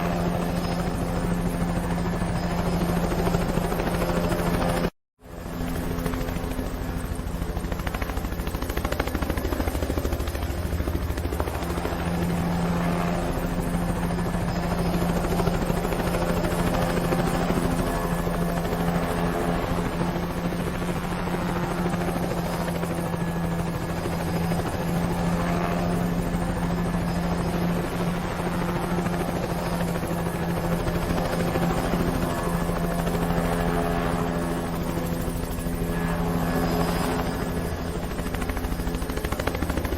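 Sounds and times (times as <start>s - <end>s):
helicopter engine hum: 0.0s - 39.9s
helicopter rotor beating: 0.0s - 39.9s.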